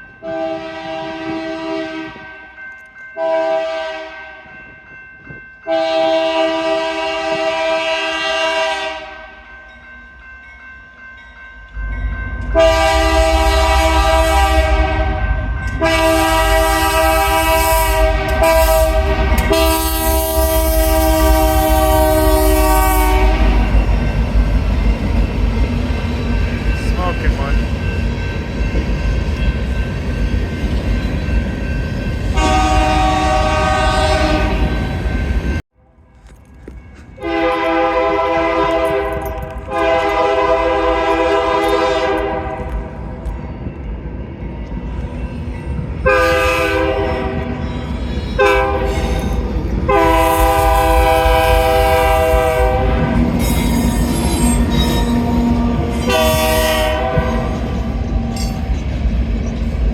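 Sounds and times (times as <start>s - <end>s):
locomotive air horn blasts: 0.2s - 2.2s, 3.2s - 4.4s, 5.7s - 9.3s, 12.5s - 23.8s, 32.4s - 34.9s, 37.2s - 42.7s, 46.0s - 47.6s, 48.4s - 49.1s, 49.9s - 57.8s
locomotive engine rumble: 11.7s - 35.6s.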